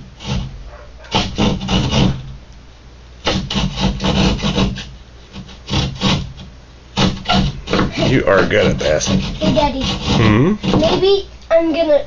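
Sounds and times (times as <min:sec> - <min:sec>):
hand saw cutting drywall: 0:00.2 - 0:00.5, 0:01.1 - 0:02.3, 0:03.2 - 0:11.1.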